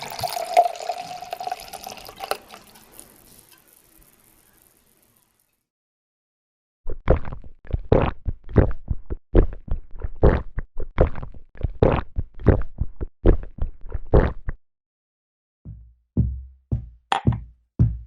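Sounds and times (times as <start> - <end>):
dull thumps and knocks: 15.7 - 18.0.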